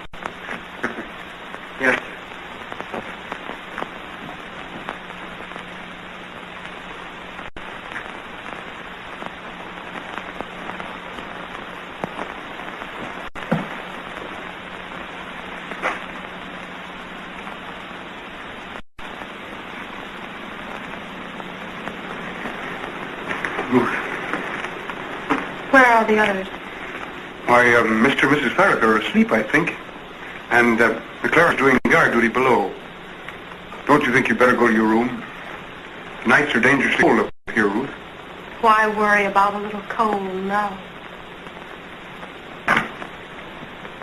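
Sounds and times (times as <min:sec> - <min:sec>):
faint low hum: 0:00.0 - 0:44.0
old film soundtrack hiss and crackle: 0:00.0 - 0:44.0
clicks and pops: 0:42.6 - 0:44.0.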